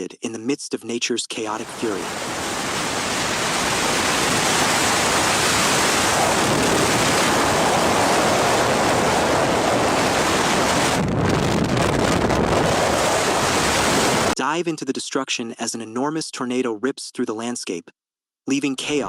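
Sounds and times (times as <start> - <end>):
strong wind on microphone: 1.6 - 14.4.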